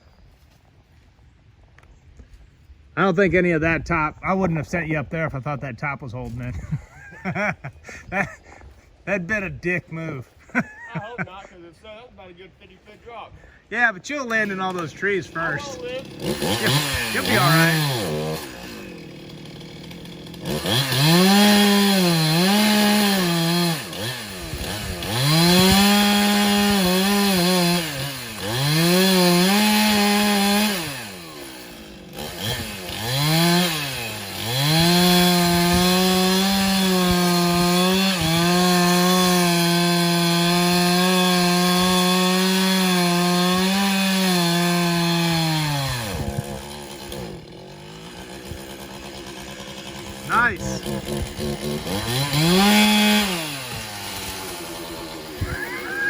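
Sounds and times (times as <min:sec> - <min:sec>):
chainsaw revving and idling: 0:06.2 - 0:08.2, 0:14.1 - 0:56.0.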